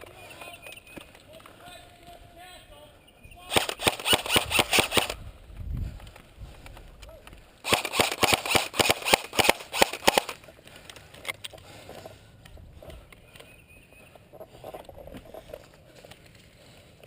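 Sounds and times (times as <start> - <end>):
airsoft guns firing: 3.4 - 5.2, 7.6 - 10.4.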